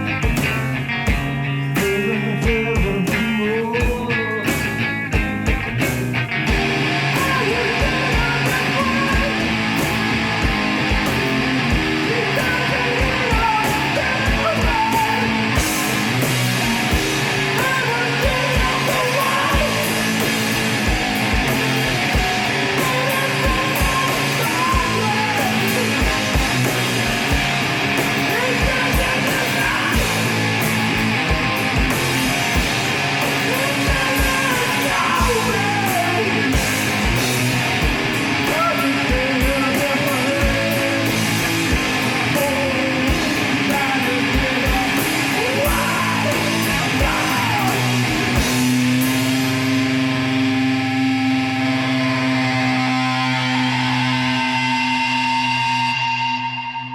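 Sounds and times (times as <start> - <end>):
drums: 0.0 - 56.9
electric guitars: 0.0 - 56.9
rock band playing live: 0.0 - 56.9
person singing: 1.6 - 4.9, 6.6 - 37.7, 38.3 - 49.1.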